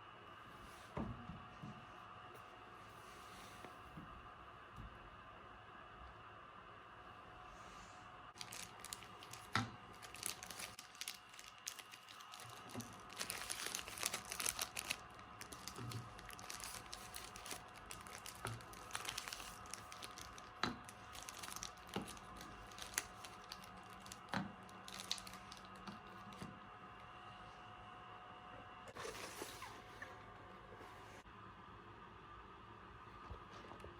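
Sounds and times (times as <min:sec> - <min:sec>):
packaging crinkling and tearing: 0:08.4 - 0:26.5.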